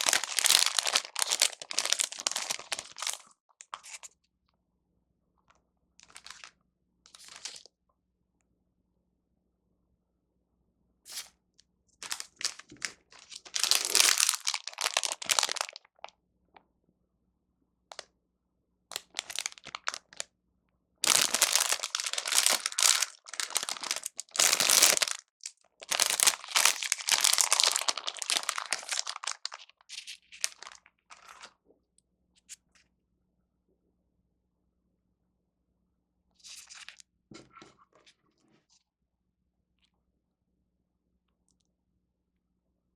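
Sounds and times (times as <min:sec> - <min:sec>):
plastic wrapping crinkling and tearing: 0:00.0 - 0:04.1, 0:06.0 - 0:06.5, 0:07.1 - 0:07.7, 0:12.0 - 0:15.9, 0:18.9 - 0:20.2, 0:21.0 - 0:31.5.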